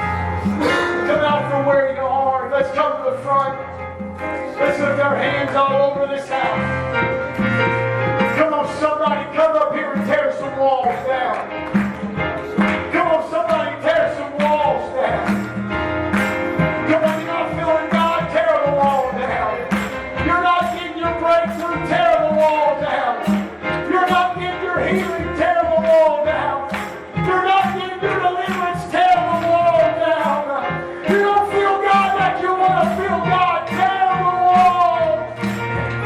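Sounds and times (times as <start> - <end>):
live church worship music: 0.0 - 36.0.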